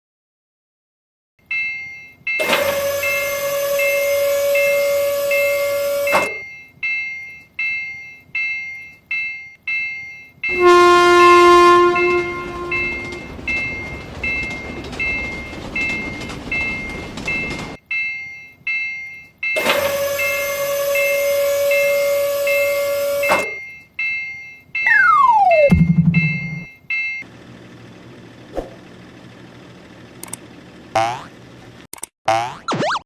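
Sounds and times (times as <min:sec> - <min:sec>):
railroad crossing bell ringing: 0:01.4 - 0:27.2
train horn: 0:02.4 - 0:06.3, 0:10.5 - 0:13.2, 0:19.6 - 0:23.4
train rushing past: 0:10.5 - 0:17.8, 0:24.9 - 0:26.7.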